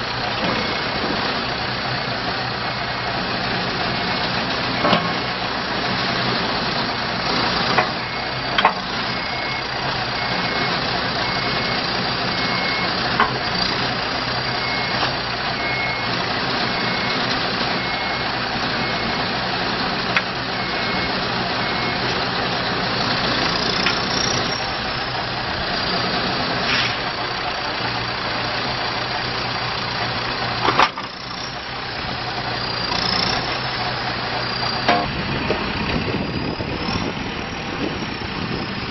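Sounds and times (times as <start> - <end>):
diesel engine running: 0.0 - 38.9
backup alarm beeping: 9.1 - 13.6, 20.5 - 22.2.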